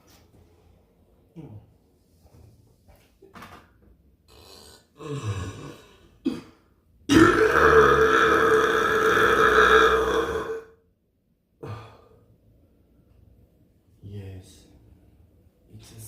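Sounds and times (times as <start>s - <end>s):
long loud burp: 4.3s - 6.5s, 7.1s - 10.8s.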